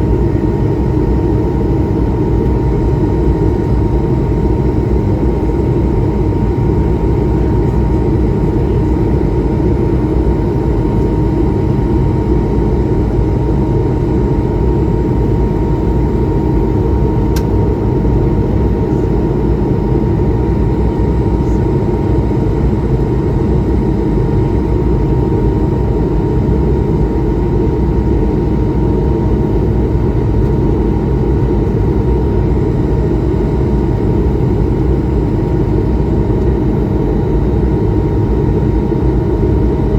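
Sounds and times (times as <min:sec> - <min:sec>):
jet engine cabin rumble: 0:00.0 - 0:39.9
faint click: 0:17.3 - 0:17.5.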